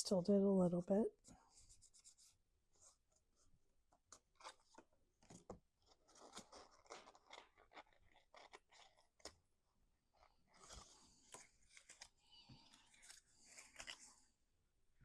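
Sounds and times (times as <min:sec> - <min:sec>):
cardstock crinkling and scraping: 0:04.1 - 0:09.4, 0:10.2 - 0:14.2.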